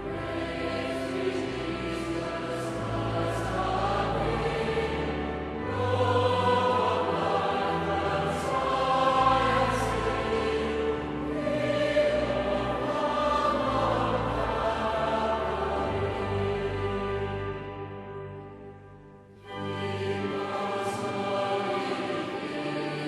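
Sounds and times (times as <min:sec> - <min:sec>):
choir singing a hymn: 0:00.0 - 0:18.8, 0:19.4 - 0:23.0
low sustained bass notes: 0:00.0 - 0:20.7.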